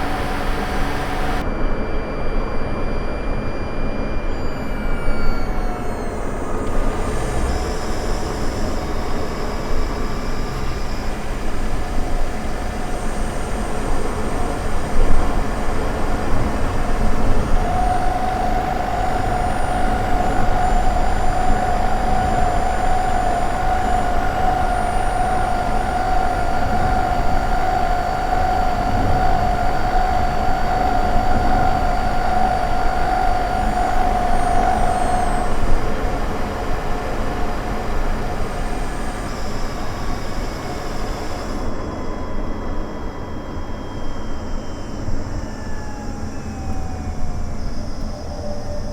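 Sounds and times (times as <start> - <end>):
engine mechanical rumble: 0.0 - 1.5, 2.6 - 48.9
high whine: 0.0 - 48.9.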